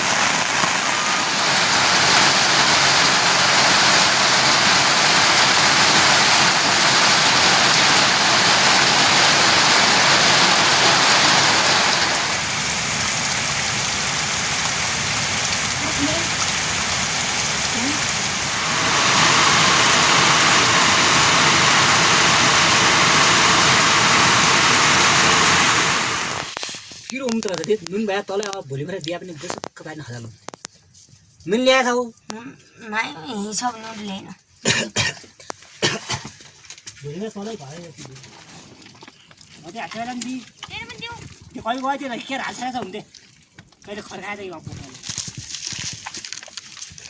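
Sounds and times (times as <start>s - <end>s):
heavy rain: 0.0s - 26.6s.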